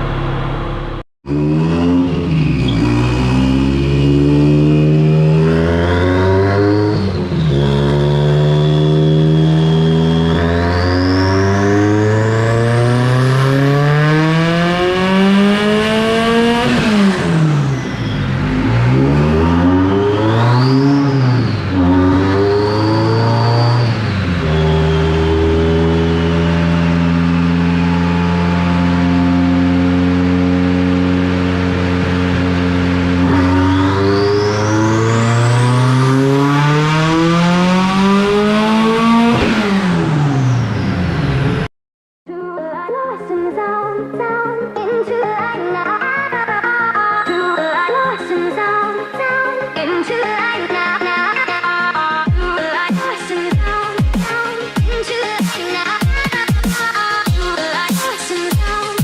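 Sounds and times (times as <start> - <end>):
engine revving: 0.0 - 41.7
high whine: 0.0 - 41.7.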